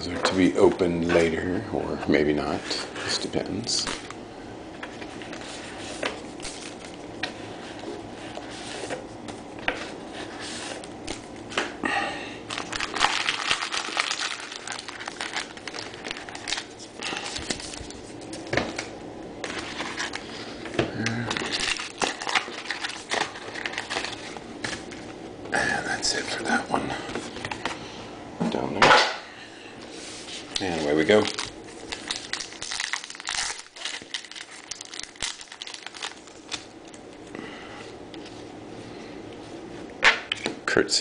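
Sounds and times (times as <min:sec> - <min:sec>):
foil wrappers crinkling: 0:12.5 - 0:25.0, 0:30.5 - 0:37.1.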